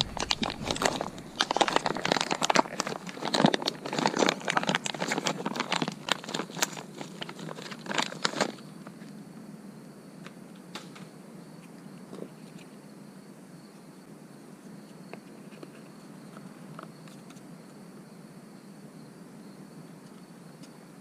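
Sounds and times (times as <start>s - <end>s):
plastic packaging crinkling and tearing: 0.0s - 8.6s.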